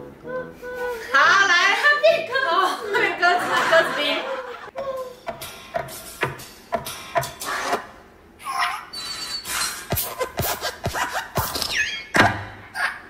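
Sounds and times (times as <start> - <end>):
squeaky spring joints: 8.5 - 12.5
hopping thuds: 9.9 - 12.6.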